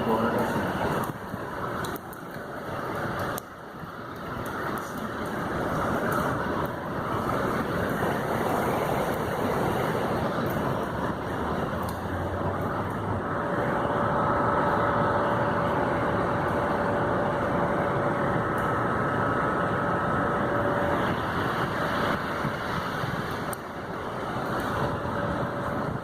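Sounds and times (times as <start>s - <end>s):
heavy rain and running water: 0.0s - 26.0s
steady whine: 0.0s - 26.0s
vehicle engine: 0.0s - 26.0s.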